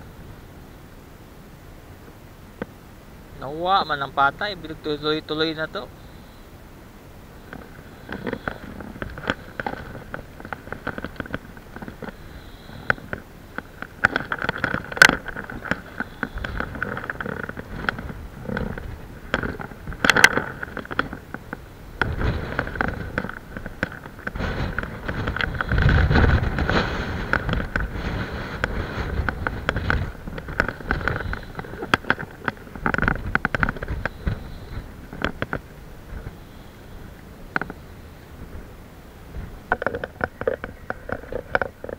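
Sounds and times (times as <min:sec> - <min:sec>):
wind gusting on microphone: 0:00.0 - 0:41.9
sharp clicks and knocks: 0:07.5 - 0:36.4, 0:37.5 - 0:37.8, 0:39.3 - 0:41.9.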